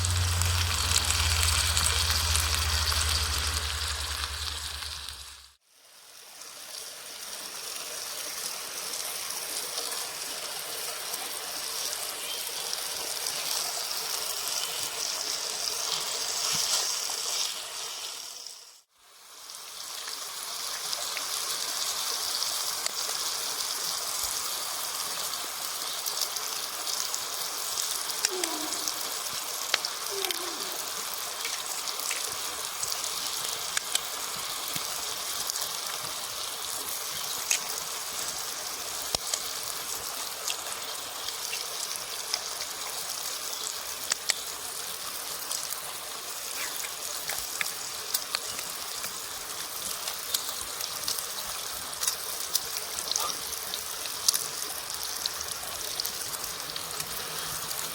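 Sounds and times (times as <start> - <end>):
eggs sizzling in a pan: 0.0 - 5.6, 11.9 - 57.9
pops and crackles: 39.0 - 39.5.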